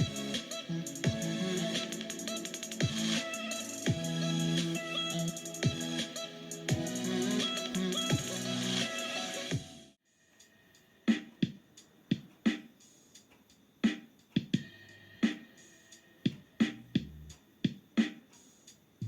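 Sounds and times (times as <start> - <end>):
drum machine beat: 0.0 - 9.9, 10.7 - 19.0
bass notes: 16.8 - 17.3.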